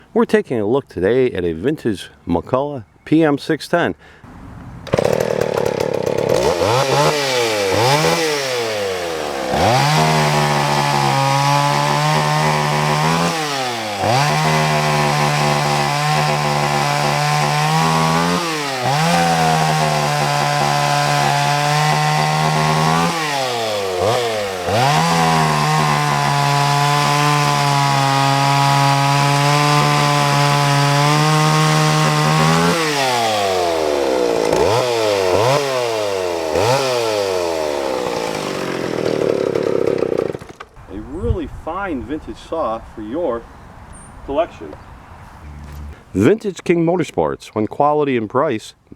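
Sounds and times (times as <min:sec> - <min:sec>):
chainsaw engine revving: 0:04.8 - 0:40.8.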